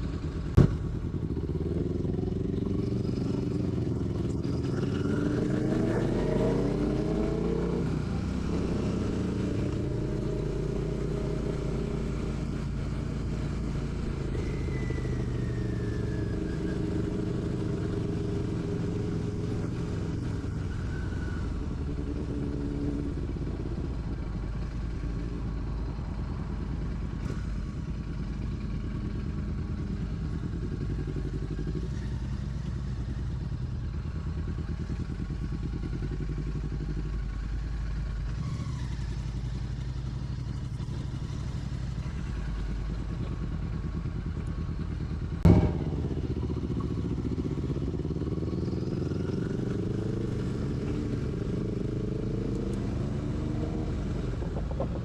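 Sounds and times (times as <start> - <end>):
motorcycle engine running: 0.0 - 55.0
sharp knock: 45.4 - 46.4.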